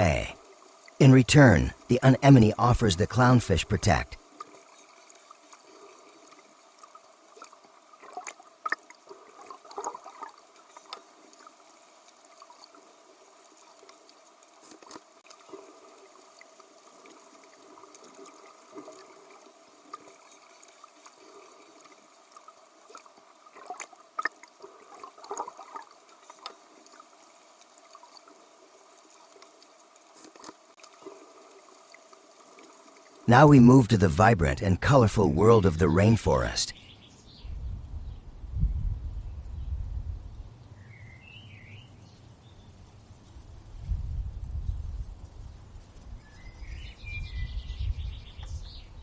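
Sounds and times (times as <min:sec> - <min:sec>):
water trickling and bubbling: 0:00.0 - 0:34.0
small clicks and splashes: 0:04.1 - 0:33.3.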